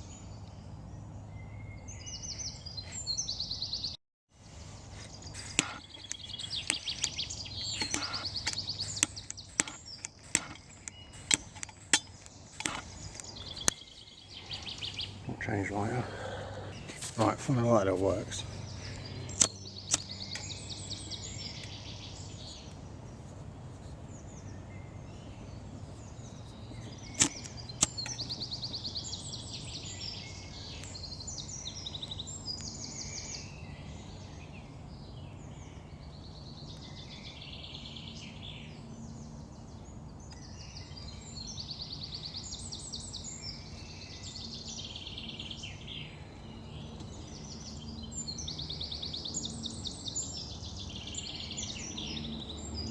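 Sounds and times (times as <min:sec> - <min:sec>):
songbirds trilling: 0:00.0 - 0:52.9
sharp clicks: 0:05.0 - 0:13.8, 0:19.0 - 0:20.6, 0:27.1 - 0:28.5.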